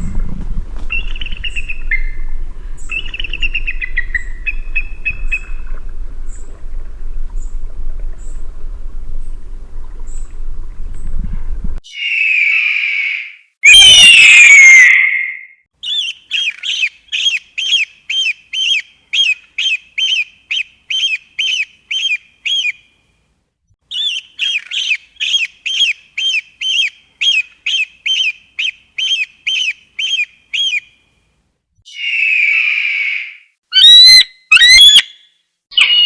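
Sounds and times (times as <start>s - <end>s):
eagle screaming: 11.8s - 15.5s, 31.9s - 36.0s.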